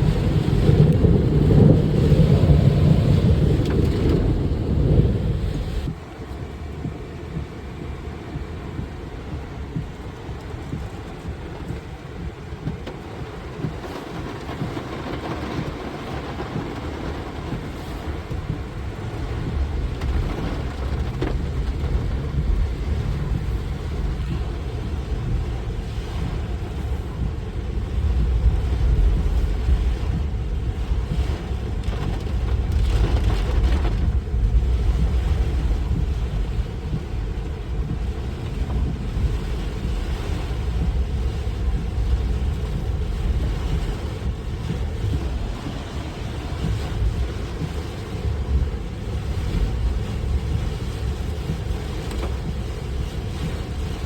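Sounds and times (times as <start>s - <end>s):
road noise: 0.0s - 54.0s
vehicle engine rumble: 0.0s - 54.0s.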